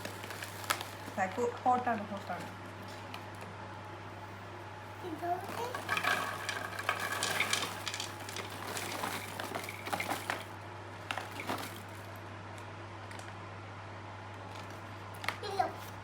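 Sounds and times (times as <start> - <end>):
paper bag crinkling: 0.0 - 1.6, 5.3 - 12.2
steady low hum: 0.0 - 16.0.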